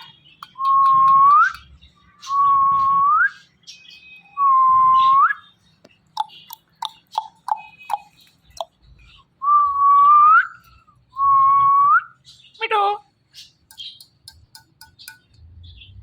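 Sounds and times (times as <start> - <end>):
parrot chirps and clicks: 0.0 - 2.0, 5.8 - 8.8, 13.4 - 15.5.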